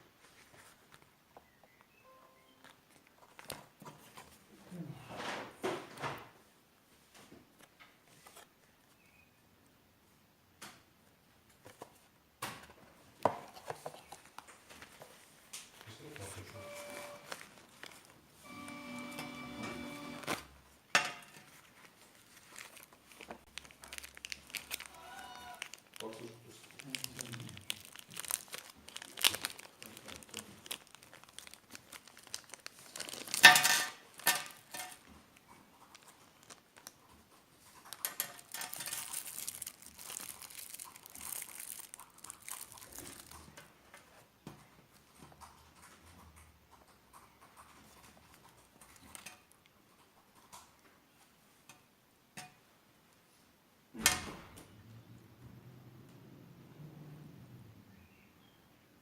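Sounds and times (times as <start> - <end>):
plastic and paper crinkling: 0.2 - 1.2, 2.6 - 4.5, 7.5 - 9.0, 13.5 - 18.5, 20.1 - 20.7, 21.3 - 44.3.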